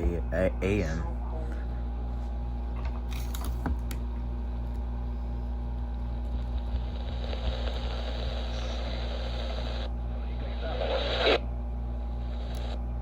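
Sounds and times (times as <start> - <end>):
radio static and hum: 0.0 - 1.9, 5.9 - 13.0.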